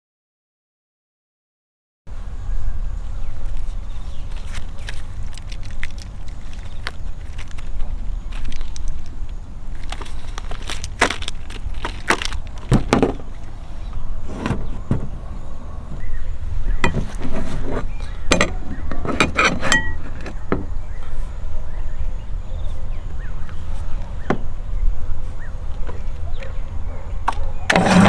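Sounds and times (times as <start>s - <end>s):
steady low rumble: 2.1s - 27.2s
hard items clinking and knocking: 9.8s - 16.1s, 16.8s - 20.8s.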